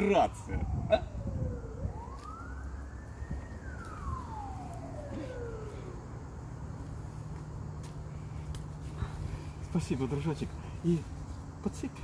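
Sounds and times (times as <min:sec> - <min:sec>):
siren wailing: 0:00.0 - 0:06.9.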